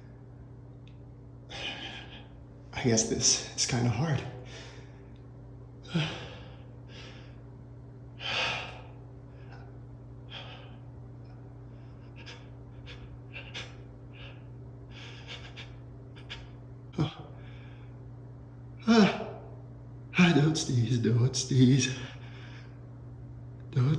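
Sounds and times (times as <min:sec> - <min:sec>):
man gasping breaths: 0:05.9 - 0:07.4, 0:08.2 - 0:10.9.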